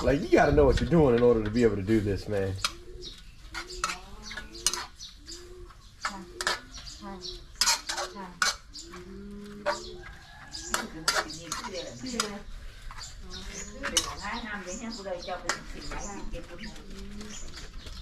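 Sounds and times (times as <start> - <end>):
low animal calls: 2.6 - 11.7
metal utensils clinking on pot: 3.6 - 5.0, 7.5 - 8.7, 10.7 - 12.4, 13.8 - 14.4.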